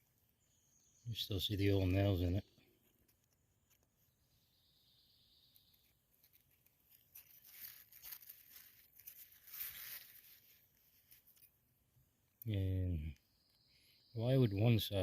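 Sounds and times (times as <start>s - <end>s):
faint rustling and scraping: 5.7s - 11.6s.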